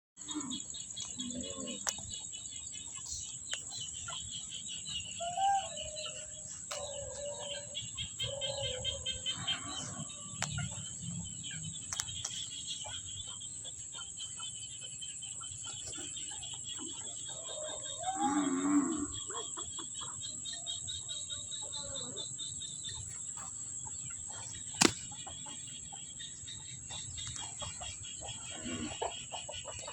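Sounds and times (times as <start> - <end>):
chickens clucking: 23.0 - 29.9.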